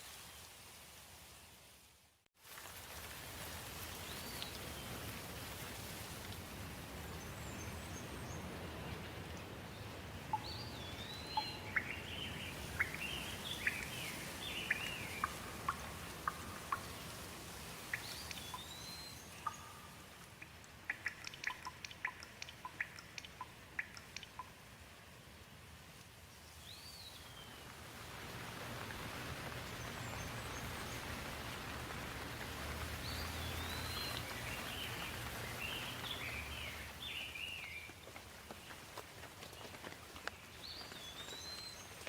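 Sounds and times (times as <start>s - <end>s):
rain hiss: 0.0s - 42.0s
songbirds calling: 7.1s - 24.5s, 28.8s - 42.0s
sharp ticks: 19.4s - 24.6s.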